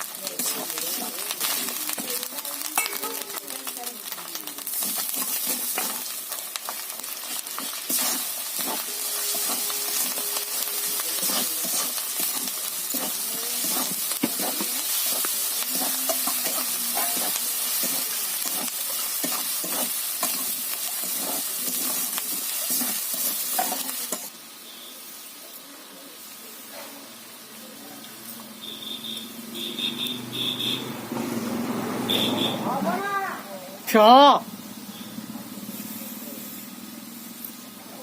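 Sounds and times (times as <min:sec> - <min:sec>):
food sizzling in hot oil: 0:00.0 - 0:38.0
spoon scraping a pan: 0:07.2 - 0:24.3.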